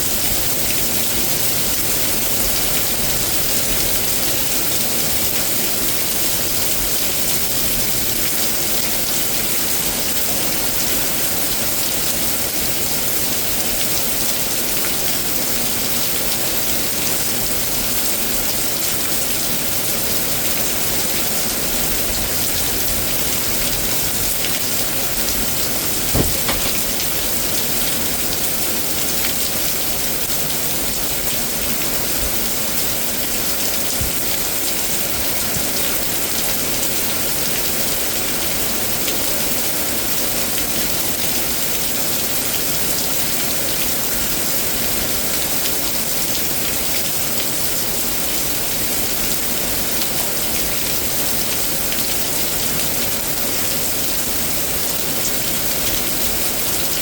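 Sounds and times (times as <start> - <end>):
heavy rain: 0.0 - 57.0
sharp knocks: 26.1 - 27.0.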